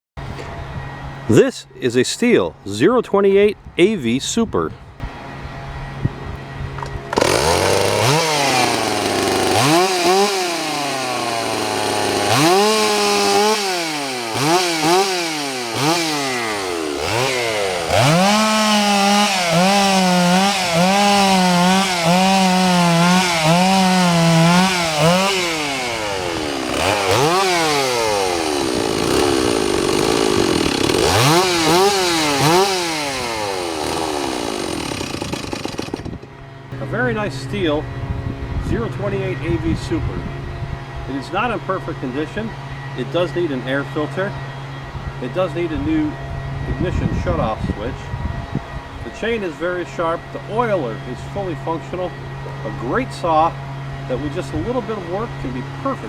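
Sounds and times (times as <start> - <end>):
chainsaw revving: 6.8 - 37.9, 40.9 - 44.5, 49.0 - 56.0.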